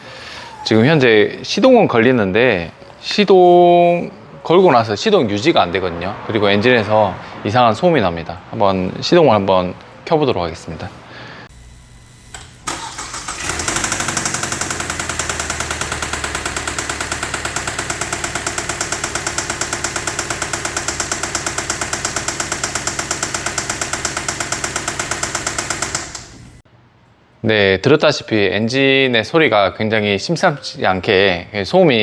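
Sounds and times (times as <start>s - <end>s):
engine cranking and starting: 12.0s - 26.6s
engine knocking: 12.7s - 26.6s.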